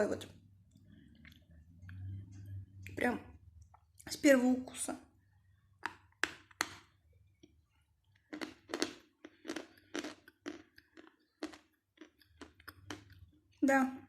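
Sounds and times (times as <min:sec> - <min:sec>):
crunchy chewing: 0:07.4 - 0:13.6.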